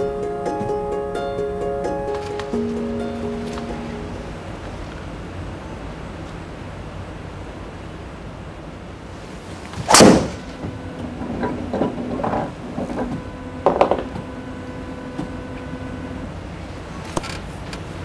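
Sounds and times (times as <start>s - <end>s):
golf club striking ball: 9.8s - 10.6s.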